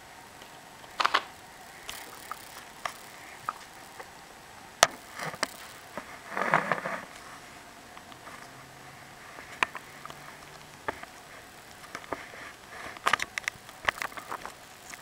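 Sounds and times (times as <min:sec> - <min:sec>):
small clicks: 0:00.4 - 0:04.2, 0:04.8 - 0:07.1, 0:09.5 - 0:15.0.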